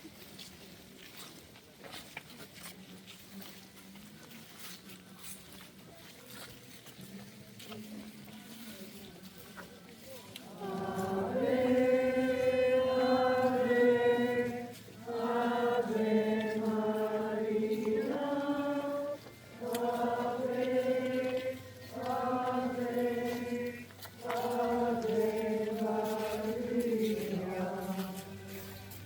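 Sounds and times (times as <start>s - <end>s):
voices chanting in unison: 10.4s - 28.9s.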